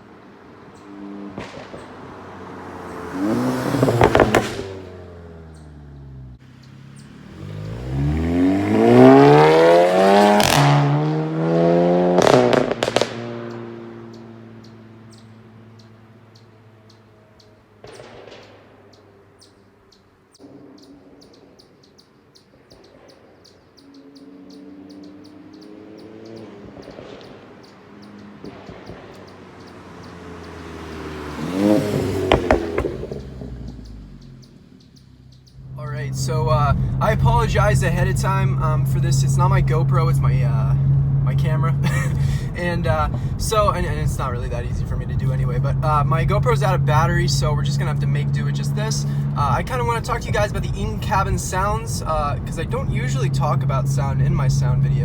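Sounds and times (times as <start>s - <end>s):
car engine accelerating: 0.0s - 55.0s
exhaust pops and crackles: 0.0s - 55.0s
gear upshift crack: 1.4s - 5.9s, 25.5s - 39.4s.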